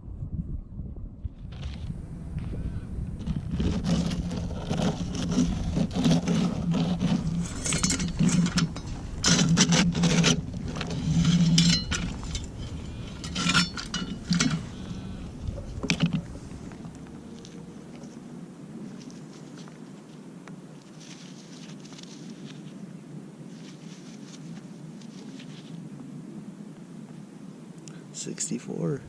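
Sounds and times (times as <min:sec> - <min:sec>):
low drone: 0:00.0 - 0:20.5
shovel scraping and knocking: 0:03.2 - 0:16.5.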